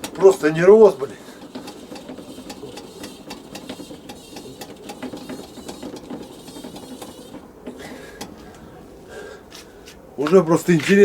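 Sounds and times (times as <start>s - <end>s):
hand pump clicking: 0.0s - 8.6s.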